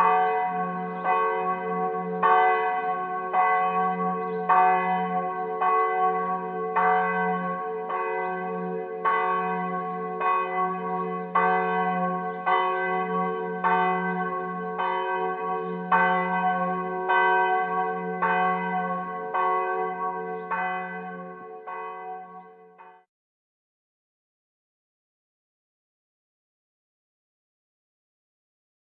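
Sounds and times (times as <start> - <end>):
church bell ringing: 0.0 - 23.1.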